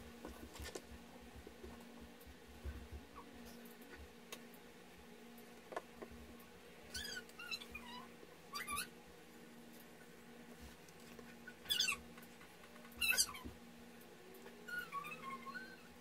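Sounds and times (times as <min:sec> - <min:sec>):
faint steady hum: 0:00.0 - 0:16.0
small animal squeaking: 0:06.9 - 0:08.9, 0:11.4 - 0:12.1, 0:12.9 - 0:13.5, 0:14.6 - 0:15.9.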